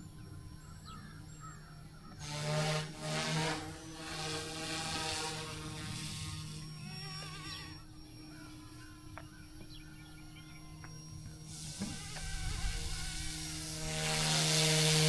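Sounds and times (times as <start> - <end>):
rc helicopter rotor humming: 0.0 - 15.0.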